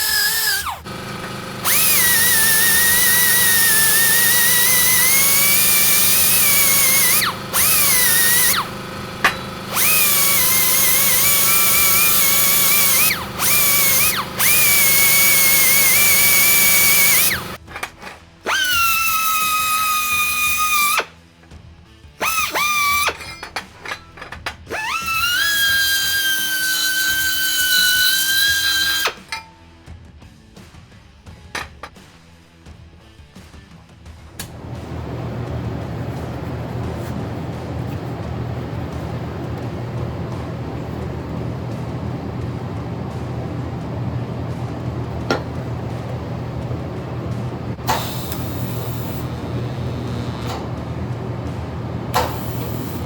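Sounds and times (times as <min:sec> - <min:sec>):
electric drill whine: 0:00.0 - 0:17.6, 0:24.7 - 0:29.2, 0:34.4 - 0:53.0.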